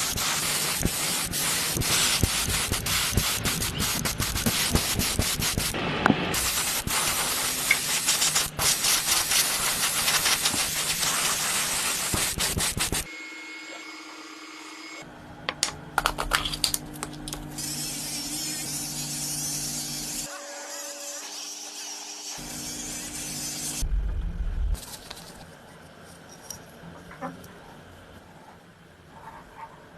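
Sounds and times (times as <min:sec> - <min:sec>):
steady hum: 0:22.4 - 0:25.6.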